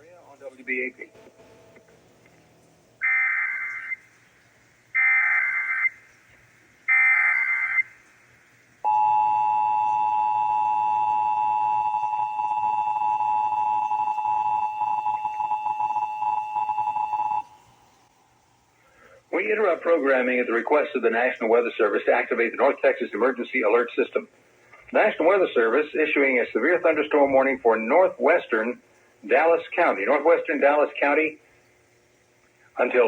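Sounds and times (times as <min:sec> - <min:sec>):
warbling digital data bursts: 0:00.0 - 0:06.1, 0:06.9 - 0:08.0
steady two-tone attention signal: 0:00.4 - 0:04.0, 0:08.8 - 0:17.7.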